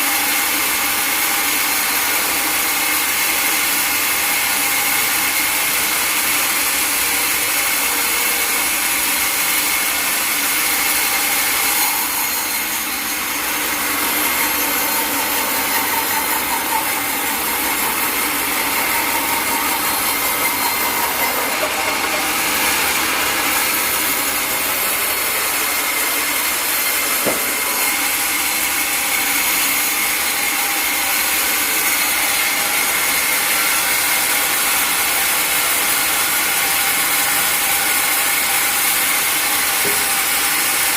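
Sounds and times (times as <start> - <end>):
saw blade cutting wood: 0.0 - 40.9
machinery running: 10.4 - 29.0.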